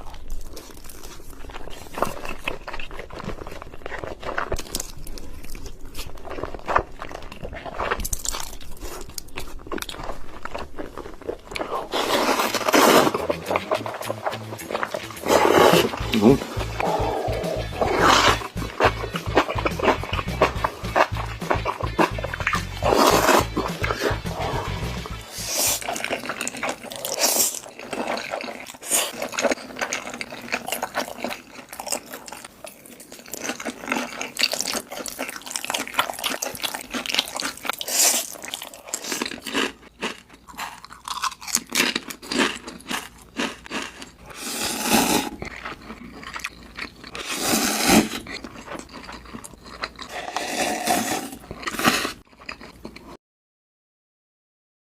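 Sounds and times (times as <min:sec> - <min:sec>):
wet chewing and crunching: 0:00.0 - 0:53.2.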